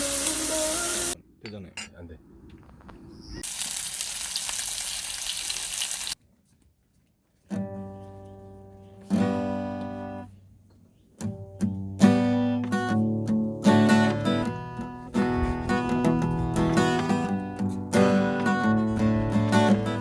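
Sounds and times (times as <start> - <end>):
food sizzling in a pan: 0.0 - 1.2, 3.4 - 6.2
acoustic guitar strummed: 7.5 - 10.3, 11.2 - 20.0.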